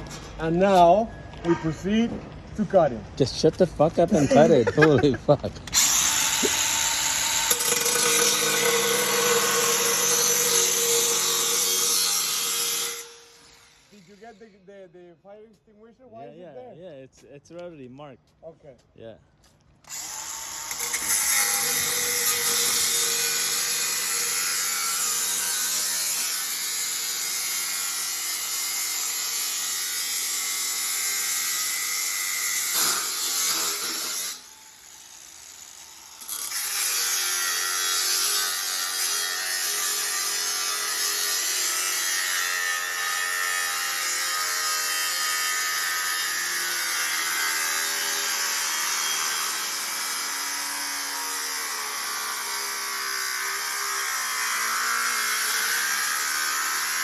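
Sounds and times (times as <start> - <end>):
angle grinder cutting metal: 4.2 - 14.5, 19.9 - 57.0.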